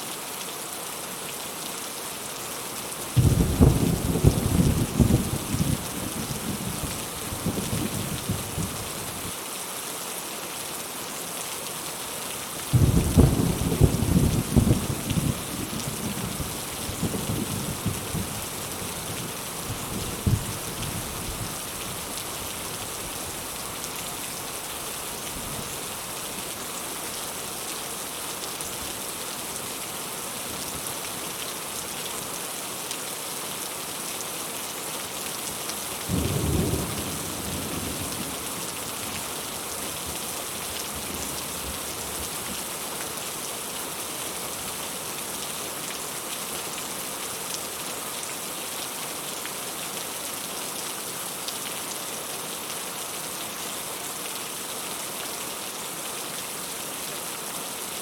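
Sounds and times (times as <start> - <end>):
heavy rain hissing: 10.2 - 32.8, 35.9 - 47.9.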